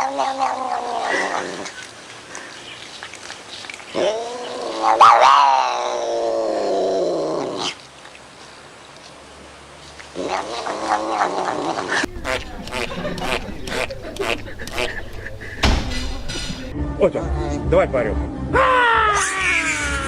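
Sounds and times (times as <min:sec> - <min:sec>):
animal yowling: 0:00.0 - 0:01.8, 0:04.0 - 0:07.8, 0:18.6 - 0:20.0.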